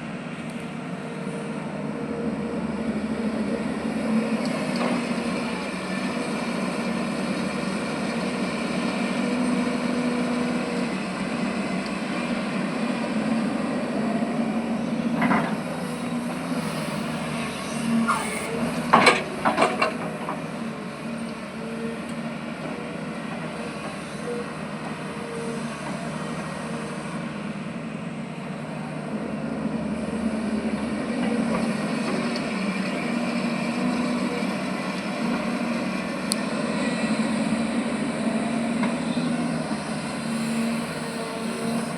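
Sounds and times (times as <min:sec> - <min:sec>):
diesel earthmoving machine running: 0:00.0 - 0:41.9
metallic clanks and squeals: 0:15.2 - 0:20.4.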